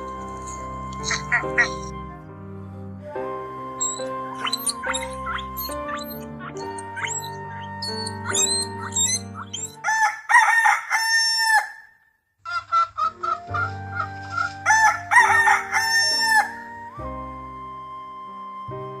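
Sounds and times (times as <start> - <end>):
background music: 0.0 - 10.8, 13.0 - 19.0
rooster crowing: 9.8 - 11.9, 14.6 - 16.6.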